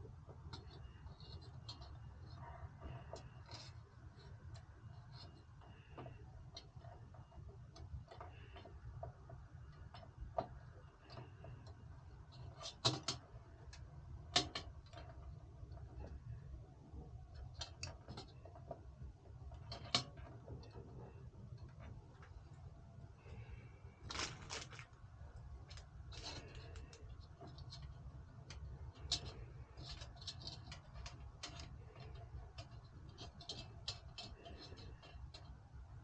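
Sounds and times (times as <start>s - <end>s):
low steady hum: 0.0s - 36.0s
computer hardware clicks and taps: 0.1s - 16.4s.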